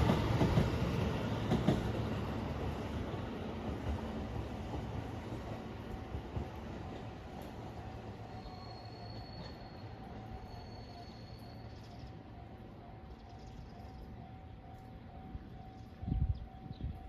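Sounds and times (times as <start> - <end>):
low railway rumble: 0.0 - 17.0.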